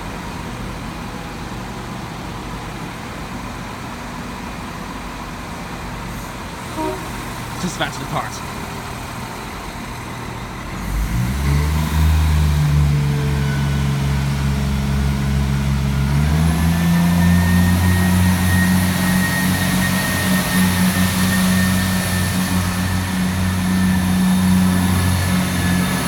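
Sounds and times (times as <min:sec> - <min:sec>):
train diesel engine drone: 0:00.0 - 0:26.0
thin high whine: 0:06.6 - 0:08.9.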